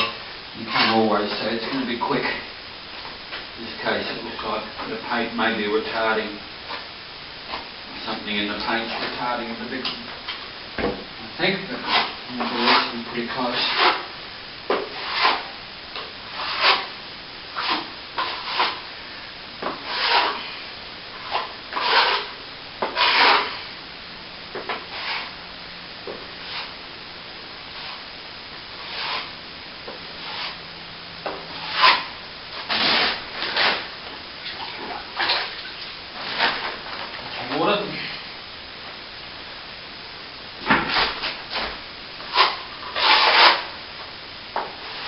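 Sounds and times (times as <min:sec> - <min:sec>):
steel trowel scraping plaster: 0:00.6 - 0:01.1, 0:11.7 - 0:14.1, 0:14.9 - 0:15.5, 0:16.3 - 0:16.9, 0:17.6 - 0:18.8, 0:19.8 - 0:20.4, 0:21.2 - 0:23.7, 0:28.8 - 0:29.3, 0:30.2 - 0:30.6, 0:31.5 - 0:33.8, 0:42.2 - 0:43.7.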